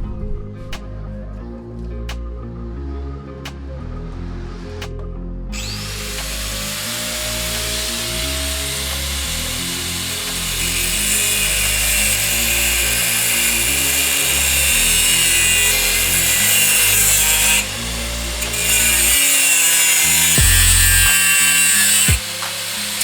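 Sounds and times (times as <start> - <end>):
background music: 0.0 - 23.0
power tool cutting metal: 5.6 - 23.0.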